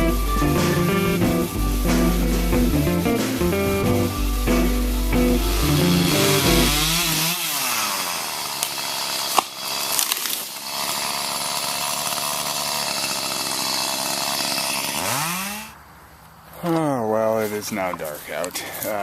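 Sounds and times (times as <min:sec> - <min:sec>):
guitar music: 0:00.0 - 0:07.4
chainsaw revving: 0:00.0 - 0:15.8.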